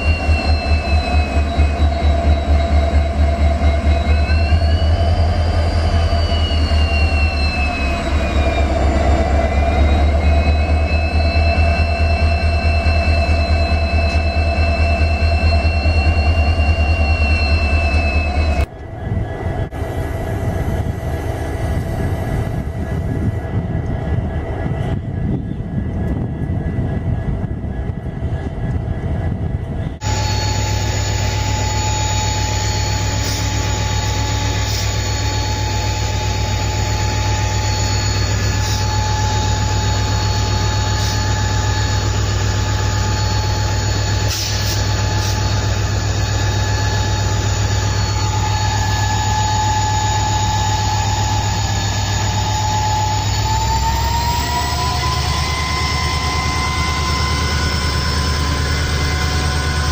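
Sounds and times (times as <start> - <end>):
locomotive engine drone: 0.0 - 59.9
turbocharger whine: 30.0 - 59.9.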